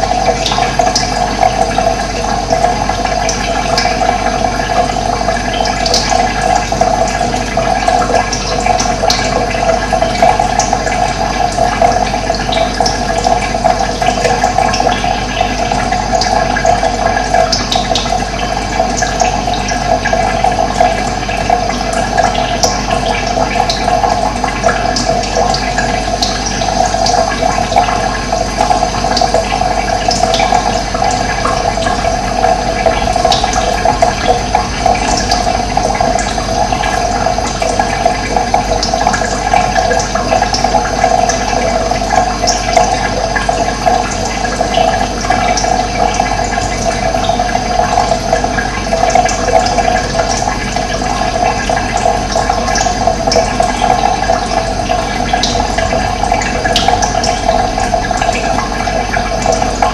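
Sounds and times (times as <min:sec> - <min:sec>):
running water: 0:00.0 - 0:59.9.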